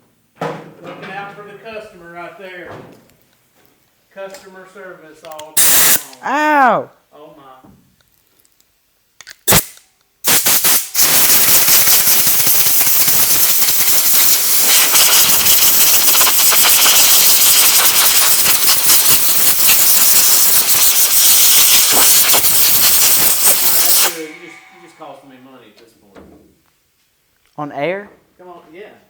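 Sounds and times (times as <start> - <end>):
air blow gun hissing: 5.6 - 6.1, 9.5 - 25.4.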